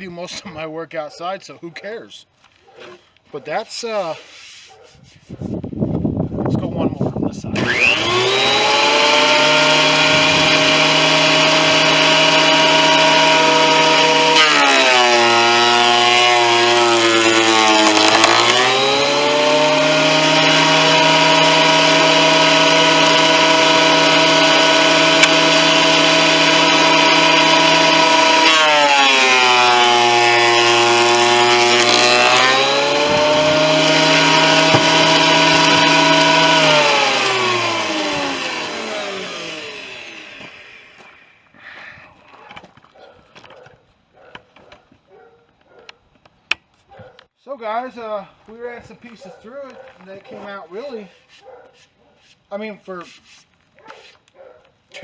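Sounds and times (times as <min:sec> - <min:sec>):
planer winding down: 0:07.5 - 0:41.3
thickness planer motor labouring: 0:07.5 - 0:41.3.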